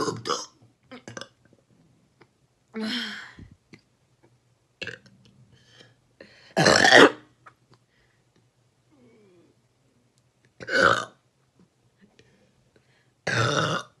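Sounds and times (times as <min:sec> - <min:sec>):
person burping: 0:00.0 - 0:01.4, 0:04.8 - 0:05.1, 0:06.6 - 0:07.2, 0:10.6 - 0:11.2, 0:13.3 - 0:14.0.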